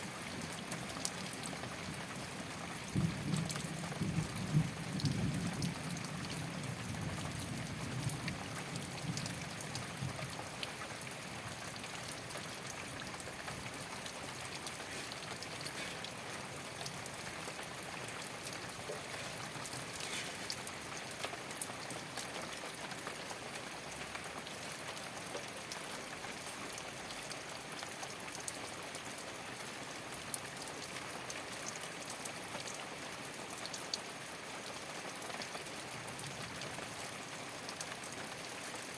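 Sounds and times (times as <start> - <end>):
rain on a thatched roof: 0.0 - 38.9
raindrop ticks: 0.4 - 28.7.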